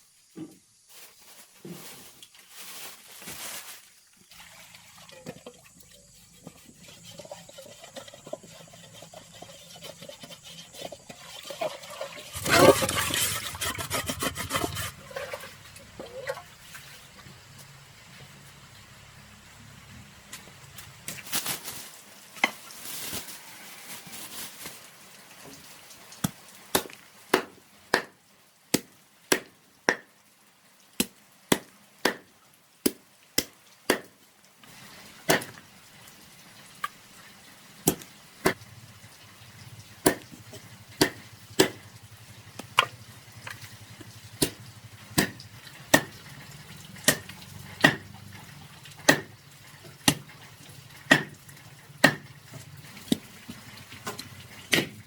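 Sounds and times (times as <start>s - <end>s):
knife chopping on cutting board: 41.0s - 41.8s, 45.2s - 45.4s, 49.1s - 49.3s, 51.1s - 51.3s, 52.0s - 52.3s.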